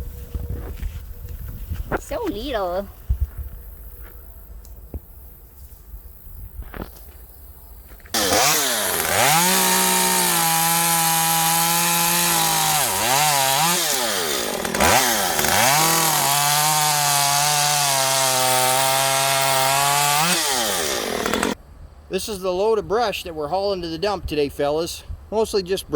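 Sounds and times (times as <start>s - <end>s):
chainsaw revving and cutting: 8.2s - 21.6s.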